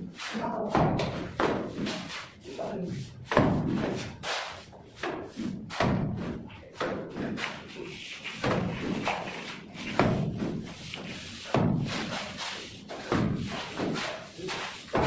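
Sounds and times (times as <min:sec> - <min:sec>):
mortar slapping onto wall: 0:08.3 - 0:15.0.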